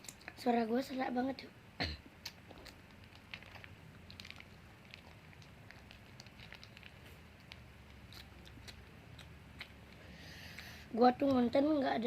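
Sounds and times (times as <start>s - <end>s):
low room hum: 0.0s - 12.0s
chewing clicks and smacks: 2.2s - 10.0s.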